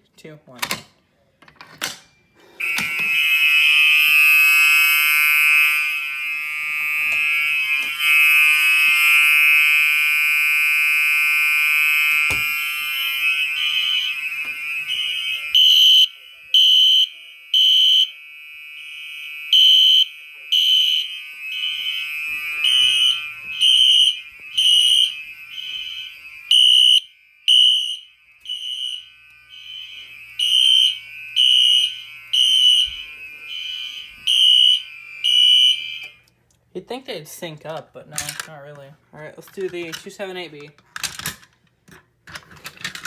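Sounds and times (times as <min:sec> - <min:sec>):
steady high alarm tone: 0:02.1 - 0:36.3
fire alarm horn beeps: 0:02.1 - 0:36.4
second alarm horn beeps: 0:02.6 - 0:36.2.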